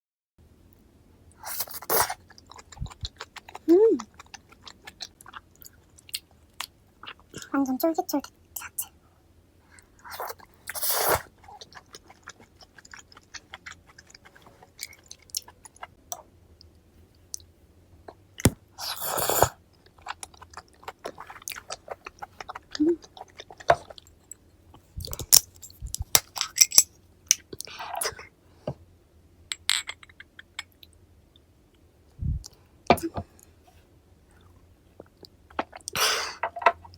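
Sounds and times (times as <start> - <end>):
wet chewing clicks: 2.2 - 7.3.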